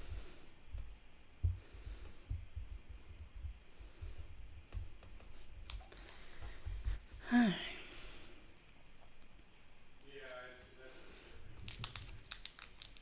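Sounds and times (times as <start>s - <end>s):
soft thuds and handling noise: 0.0s - 7.3s
faint airy hiss: 10.0s - 11.6s.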